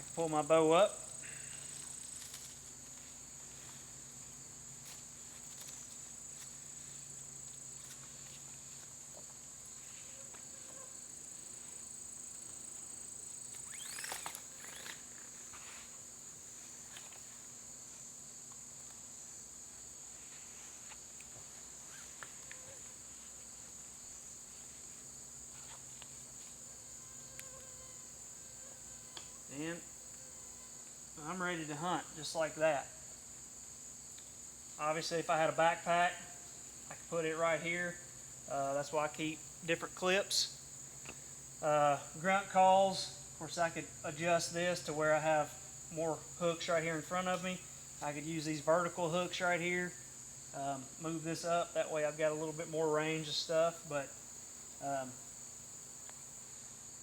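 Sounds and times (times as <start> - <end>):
insect chorus: 0.0 - 57.0
scrape: 15.5 - 16.0, 20.1 - 21.0.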